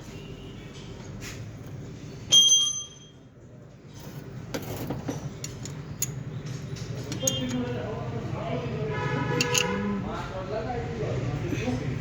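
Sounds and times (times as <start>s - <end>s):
metal tool clinking on metal: 6.8s - 7.6s, 9.3s - 9.8s.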